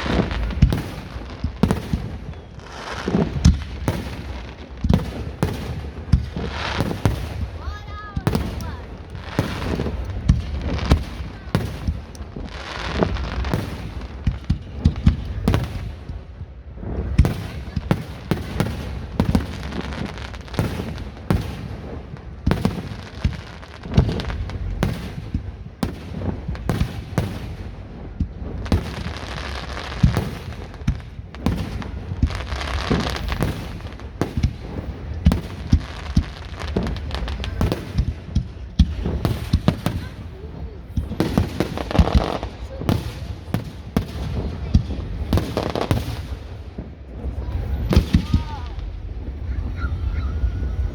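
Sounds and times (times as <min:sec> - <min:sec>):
fireworks bursts and crackles: 0:00.0 - 0:50.9
low rumble: 0:46.6 - 0:50.9.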